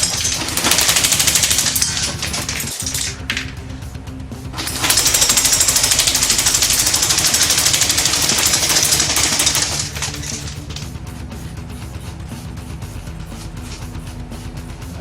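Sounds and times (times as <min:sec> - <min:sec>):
airsoft rifle full-auto burst: 0:00.0 - 0:03.1, 0:04.6 - 0:10.6
background music: 0:00.0 - 0:15.0.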